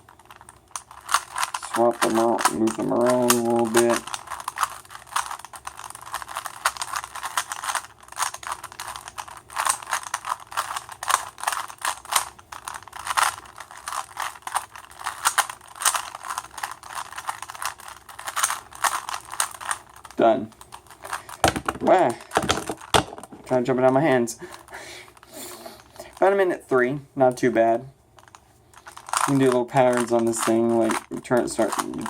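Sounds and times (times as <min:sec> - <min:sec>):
puzzle cube clicking: 0:00.3 - 0:20.2.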